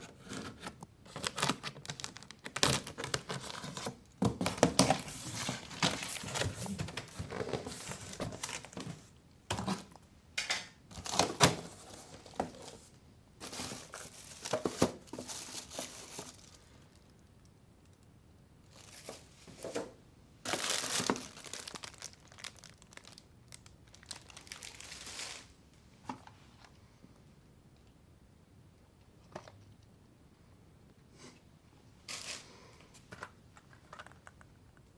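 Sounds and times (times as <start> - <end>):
packaging crinkling and tearing: 0.2 - 9.0, 10.9 - 17.1, 18.7 - 19.8, 20.5 - 25.6.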